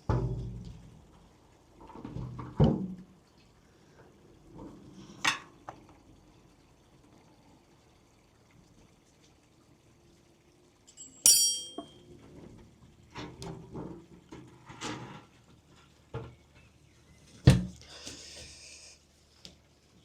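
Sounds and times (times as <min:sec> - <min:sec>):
metallic clink: 0:10.9 - 0:12.0.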